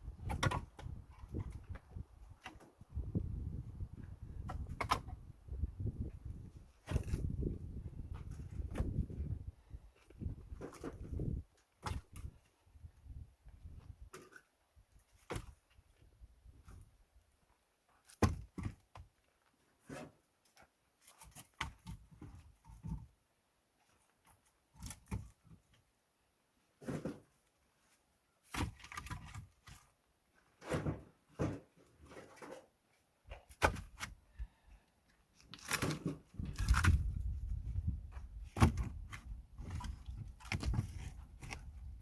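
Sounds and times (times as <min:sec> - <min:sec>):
knocks and thuds of handling: 0:18.2 - 0:19.0, 0:30.6 - 0:32.6, 0:35.7 - 0:41.6.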